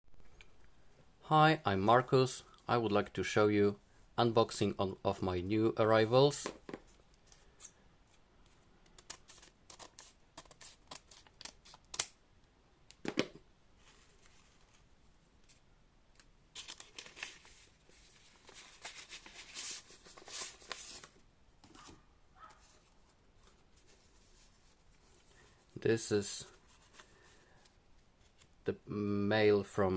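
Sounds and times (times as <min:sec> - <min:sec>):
paper tearing and crinkling: 0:09.0 - 0:12.1, 0:16.5 - 0:21.2.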